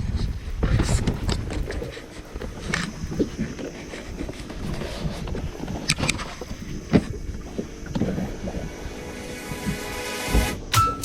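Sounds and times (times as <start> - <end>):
sharp knocks: 10.8 - 11.0.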